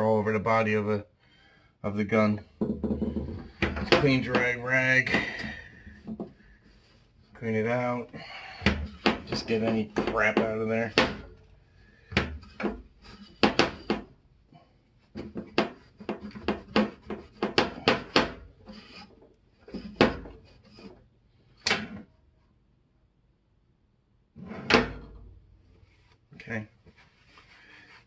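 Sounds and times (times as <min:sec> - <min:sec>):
loud knocks: 0:02.6 - 0:06.3, 0:08.6 - 0:11.4, 0:13.4 - 0:14.1.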